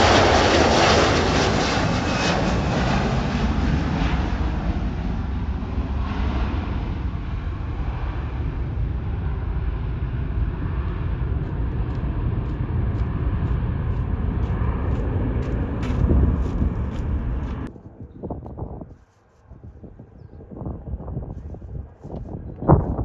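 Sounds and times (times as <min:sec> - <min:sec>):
jet engines roaring: 0:00.0 - 0:17.7.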